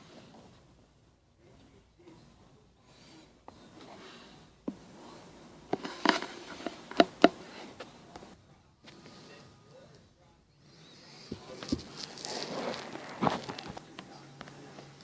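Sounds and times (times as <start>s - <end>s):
packaging rustling: 11.8s - 13.9s.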